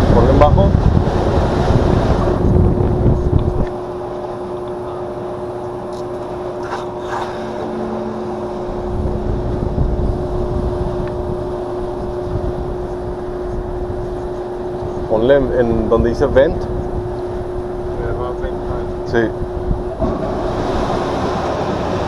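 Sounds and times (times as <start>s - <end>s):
cooler blower motor humming: 0.0s - 22.0s
rush of moving air: 19.5s - 22.0s.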